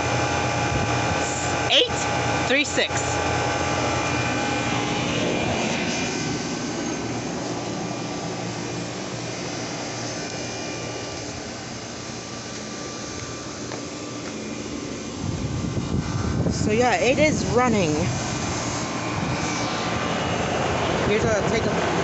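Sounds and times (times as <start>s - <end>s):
condenser fan air rushing: 0.0s - 22.0s
steady hum: 0.0s - 22.0s.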